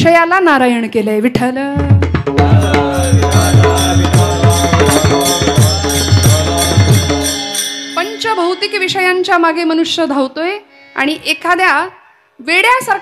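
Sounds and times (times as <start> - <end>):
hand drum beating: 1.8 - 7.6
harmonium-like held tone: 2.5 - 11.6
hand cymbals ringing: 2.6 - 9.9.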